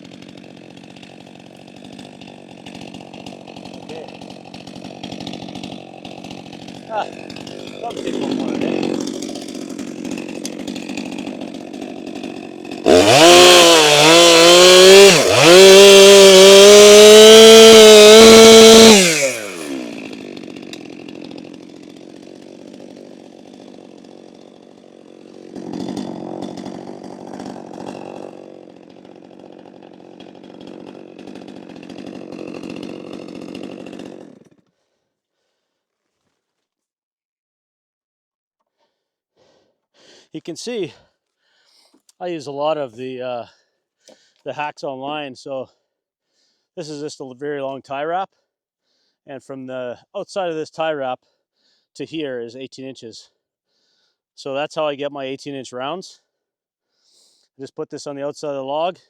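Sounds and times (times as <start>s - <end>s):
chainsaw idling and revving: 0.0s - 35.6s.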